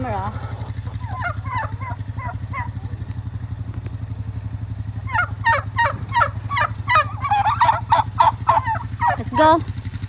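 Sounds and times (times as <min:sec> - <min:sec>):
turkey gobbling: 0:00.0 - 0:03.2, 0:04.9 - 0:09.6
tractor engine idling: 0:00.0 - 0:10.0.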